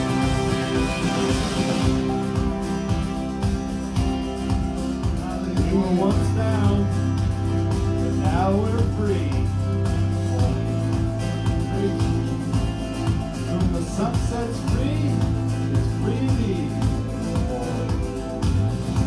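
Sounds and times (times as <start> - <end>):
live band playing: 0.0 - 5.9
wordless singing: 0.0 - 19.0.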